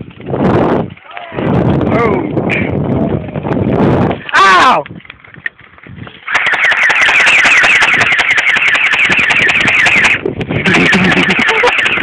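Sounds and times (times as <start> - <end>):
airsoft gun firing full-auto: 6.3 - 10.2, 10.8 - 12.0
whirring gun mechanism: 6.3 - 12.0.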